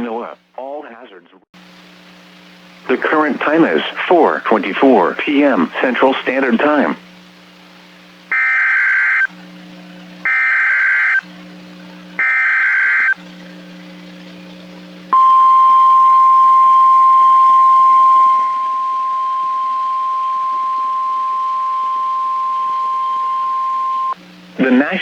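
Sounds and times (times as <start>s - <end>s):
digital data bursts: 8.3s - 9.3s, 10.3s - 11.2s, 12.2s - 13.2s, 18.0s - 25.0s
steady warning alarm tone: 8.3s - 9.3s, 10.2s - 11.3s, 12.2s - 13.2s, 15.1s - 24.2s.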